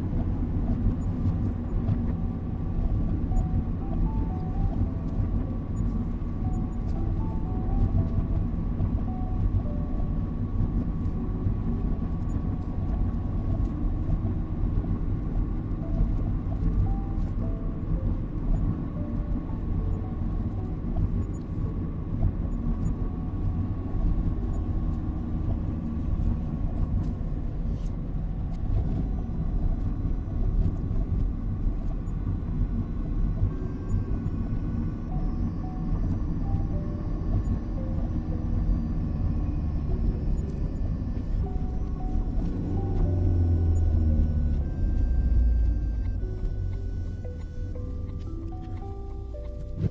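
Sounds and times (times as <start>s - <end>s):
car driving rumble: 0.0s - 49.9s
soft melody: 2.7s - 49.9s.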